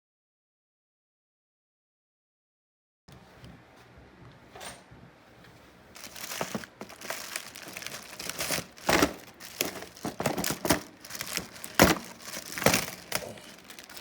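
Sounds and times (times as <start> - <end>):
packaging crinkling: 5.9 - 14.0.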